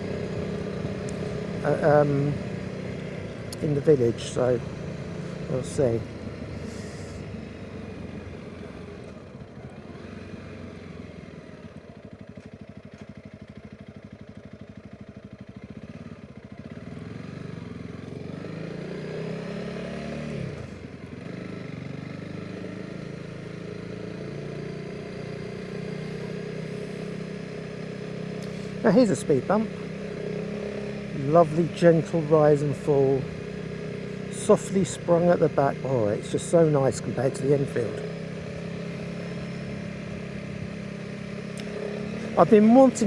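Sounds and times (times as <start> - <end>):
motorcycle engine revving: 0.0 - 43.0.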